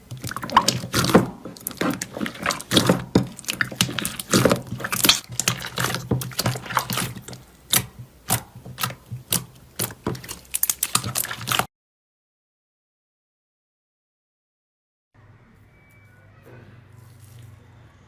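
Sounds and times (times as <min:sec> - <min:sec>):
slime clicking and popping: 0:00.2 - 0:11.7.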